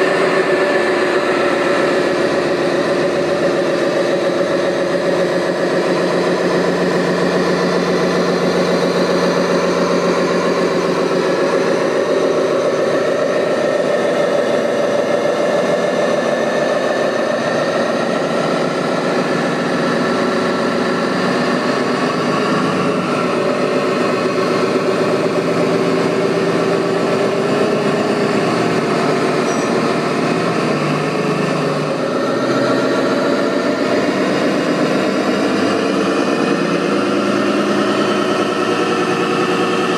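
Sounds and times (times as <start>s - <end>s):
engine idling: 0.0s - 39.9s.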